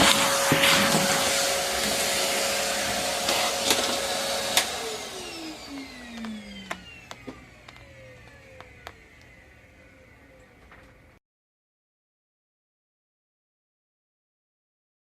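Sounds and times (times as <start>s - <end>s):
vacuum cleaner running: 0.0s - 11.2s.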